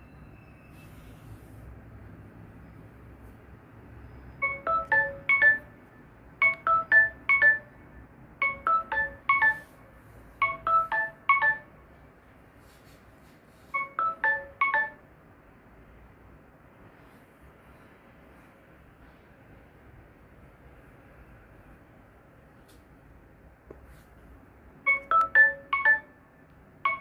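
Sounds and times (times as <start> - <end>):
xylophone-style phone alert tone: 4.4 - 11.8, 13.8 - 15.1, 24.9 - 26.2.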